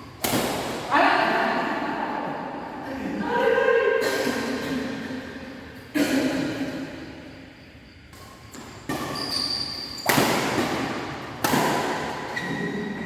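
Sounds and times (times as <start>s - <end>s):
racket hitting shuttlecock: 0.1s - 0.9s, 8.1s - 13.0s
shoes squeaking on court floor: 7.9s - 10.3s, 12.1s - 13.0s.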